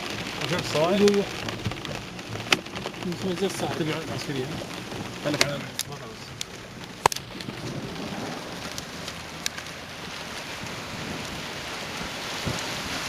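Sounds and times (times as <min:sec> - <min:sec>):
raindrops tapping glass: 0:00.0 - 0:09.9
heavy rain on a car: 0:00.0 - 0:13.0.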